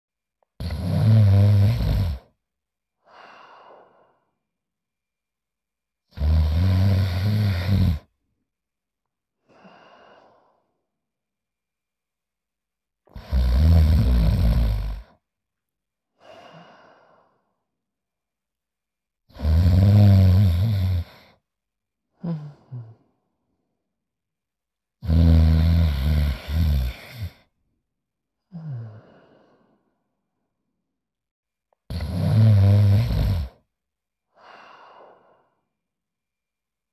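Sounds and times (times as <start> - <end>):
cartoon snoring: 0.6 - 2.3, 6.1 - 8.1, 13.1 - 15.2, 19.3 - 21.4, 25.0 - 27.5, 31.9 - 33.6
breathy exhale: 3.0 - 4.4, 16.2 - 17.5, 34.4 - 35.6.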